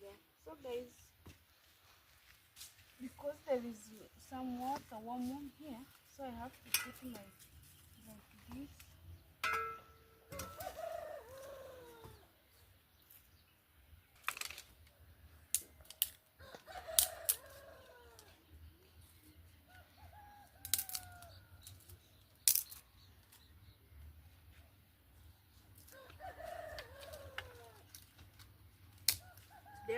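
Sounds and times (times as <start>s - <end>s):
rooster crowing: 10.3s - 12.2s, 26.0s - 27.8s.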